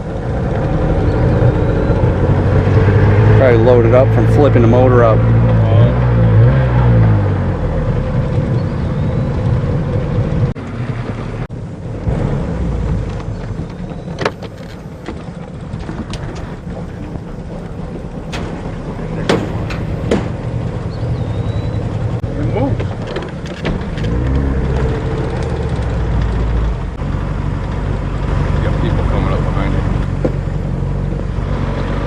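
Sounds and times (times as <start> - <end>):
outboard motor rumbling: 0.0 - 32.0
sharp knocks: 18.2 - 20.6.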